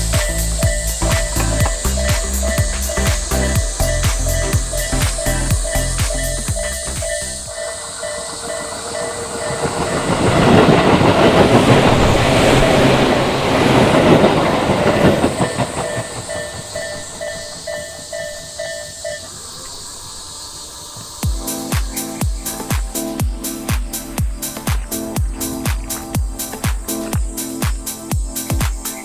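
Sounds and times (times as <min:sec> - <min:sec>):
music: 0:00.0 - 0:07.5, 0:21.2 - 0:29.0
train passing with clatter: 0:07.2 - 0:19.2.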